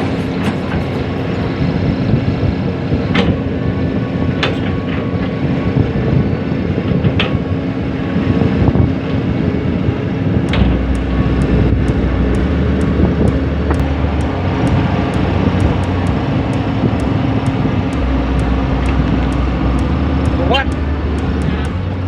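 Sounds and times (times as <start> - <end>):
diesel construction machinery drone: 0.0 - 22.0
deep low rumble: 10.5 - 22.0.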